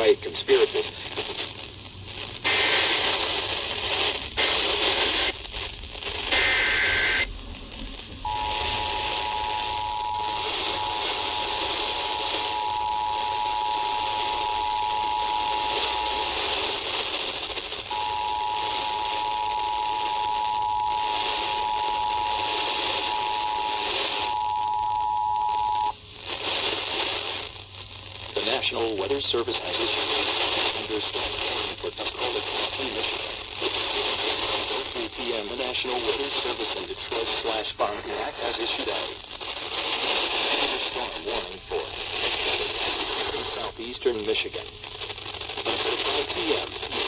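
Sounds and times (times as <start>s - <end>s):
radio static: 0.0s - 1.5s, 2.4s - 5.5s, 6.1s - 26.0s, 28.3s - 33.8s, 34.6s - 47.0s
buzzy data bursts: 2.4s - 26.0s, 34.9s - 47.0s
two-tone attention signal: 6.3s - 7.3s, 8.3s - 16.4s, 17.9s - 25.9s.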